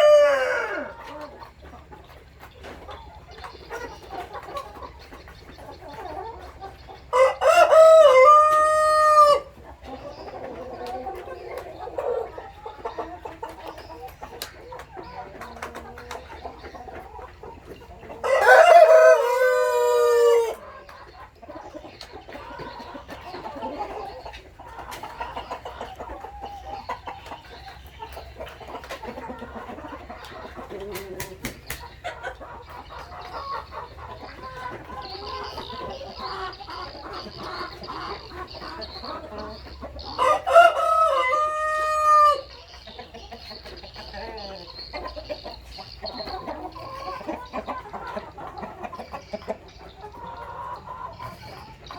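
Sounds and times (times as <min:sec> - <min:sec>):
rooster crowing: 0:00.0 - 0:00.9, 0:07.2 - 0:09.5, 0:18.2 - 0:20.6
chickens clucking: 0:00.0 - 0:51.9.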